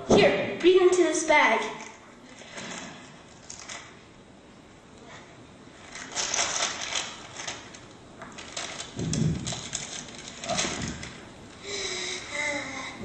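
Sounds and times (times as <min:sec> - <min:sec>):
paper bag crinkling: 0:05.8 - 0:11.3.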